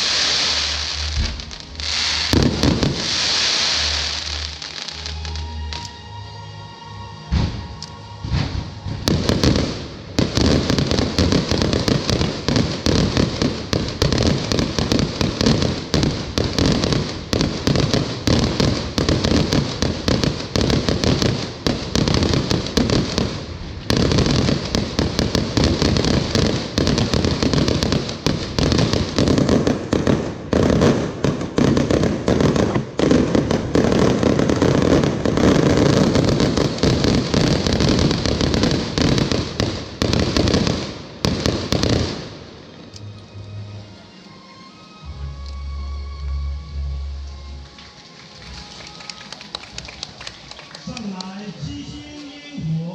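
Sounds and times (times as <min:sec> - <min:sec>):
fireworks bangs and crackling: 0:00.0 - 0:05.8, 0:07.3 - 0:42.8, 0:47.7 - 0:52.9.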